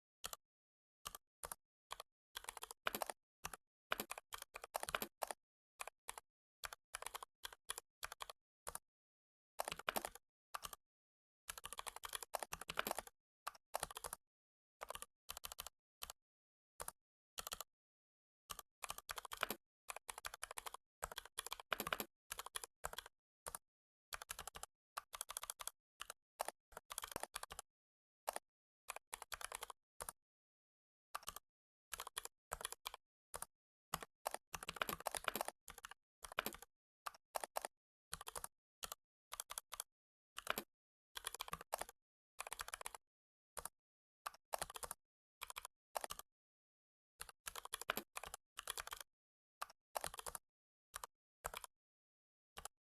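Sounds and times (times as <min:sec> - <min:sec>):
computer keyboard typing: 0:02.4 - 0:05.4, 0:06.1 - 0:08.8, 0:09.6 - 0:10.8, 0:11.5 - 0:13.1, 0:13.8 - 0:14.2, 0:18.9 - 0:23.6, 0:24.2 - 0:27.6, 0:31.2 - 0:36.7, 0:37.4 - 0:38.5, 0:40.4 - 0:43.0, 0:44.5 - 0:44.8, 0:47.4 - 0:49.1, 0:50.0 - 0:50.4.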